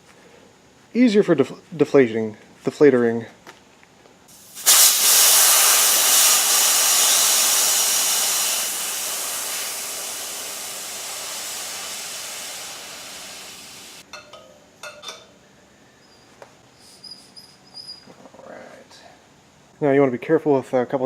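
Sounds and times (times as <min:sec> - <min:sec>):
air hissing from valve stem: 0:04.3 - 0:14.0.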